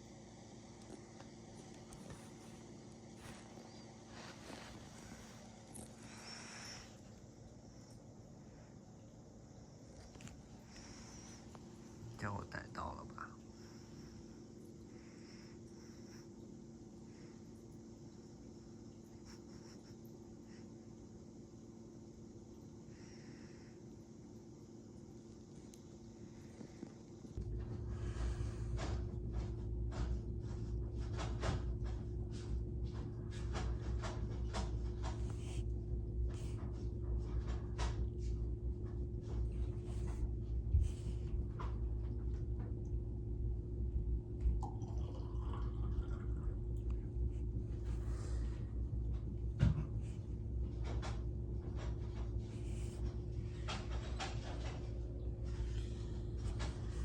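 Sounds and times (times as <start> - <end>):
low electrical hum: 0.0 - 57.0
soft scratches and rustles: 0.8 - 7.3, 28.2 - 42.1, 47.3 - 57.0.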